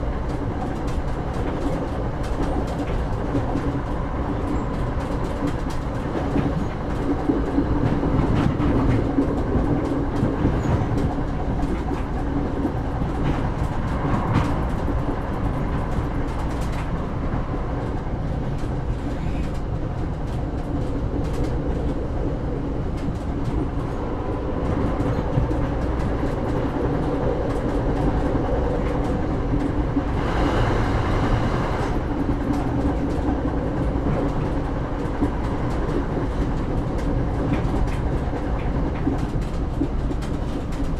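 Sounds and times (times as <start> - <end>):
train carriage rumble: 0.0 - 40.9.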